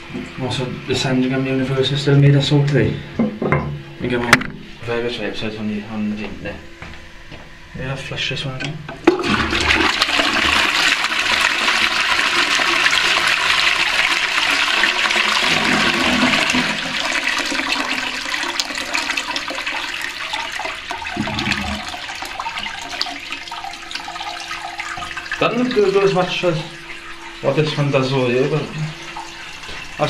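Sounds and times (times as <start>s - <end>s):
toilet flushing: 9.0s - 30.0s
cistern refilling: 9.1s - 30.0s.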